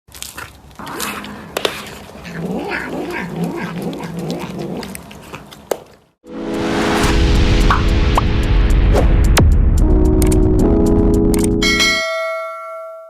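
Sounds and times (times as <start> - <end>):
music: 6.2 - 12.0.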